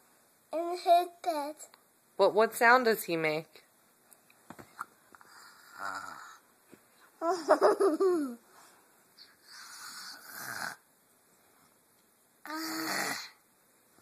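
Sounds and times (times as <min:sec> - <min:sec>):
child imitating snoring: 0:05.4 - 0:06.4, 0:09.5 - 0:10.8, 0:12.4 - 0:13.4.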